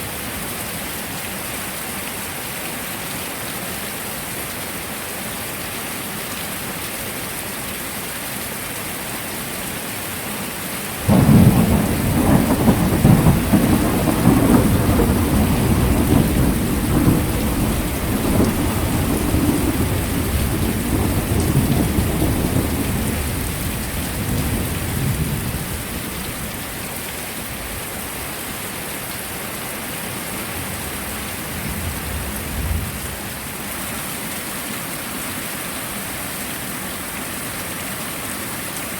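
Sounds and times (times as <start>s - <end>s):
heavy rain: 0.0s - 38.9s
thunder rumbling: 11.0s - 26.6s, 30.6s - 33.7s.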